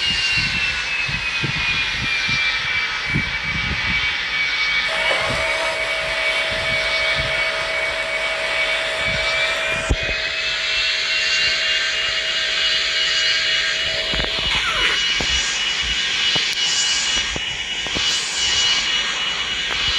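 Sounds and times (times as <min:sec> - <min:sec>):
jet engines whining: 0:00.0 - 0:19.9
low hum: 0:00.0 - 0:19.9.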